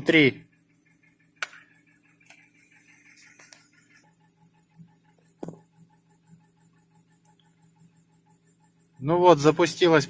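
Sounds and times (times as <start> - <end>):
car engine idling with ticking: 0.0 - 10.0
sharp clicks: 1.4 - 2.4.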